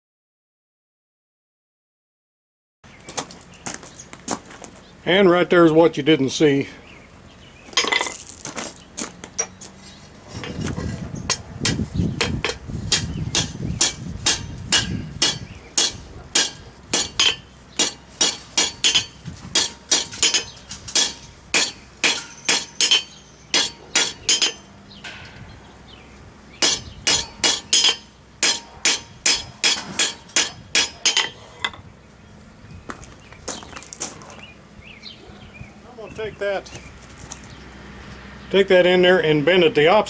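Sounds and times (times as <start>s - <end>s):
hammer striking steel on anvil: 11.6s - 25.6s, 26.6s - 31.8s.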